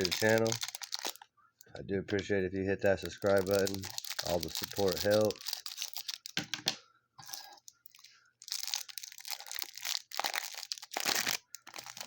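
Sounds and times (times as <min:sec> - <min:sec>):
cardboard tearing and crunching: 0:00.0 - 0:01.2, 0:03.3 - 0:06.2, 0:08.5 - 0:12.0
wrapper crinkling: 0:00.0 - 0:01.2, 0:02.8 - 0:06.4, 0:07.2 - 0:12.0.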